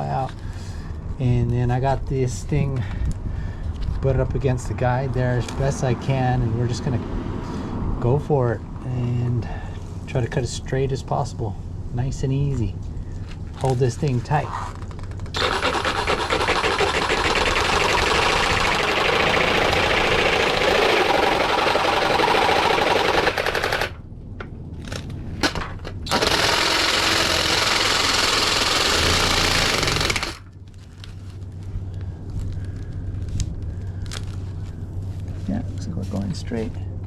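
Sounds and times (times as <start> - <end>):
reciprocating saw cutting metal: 15.4 - 24.0, 26.1 - 30.4.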